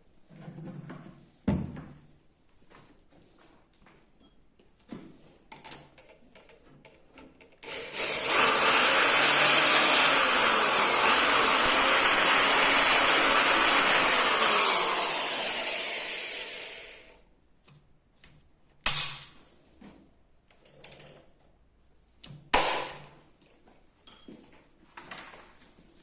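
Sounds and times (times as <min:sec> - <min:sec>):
electric power tool whining: 0:07.6 - 0:17.1.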